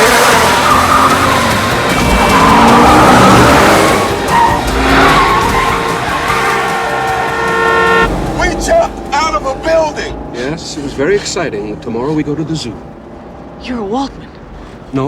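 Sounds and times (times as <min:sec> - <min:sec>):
car tyres squealing: 0:00.0 - 0:15.0
rock music with guitar: 0:00.1 - 0:08.4.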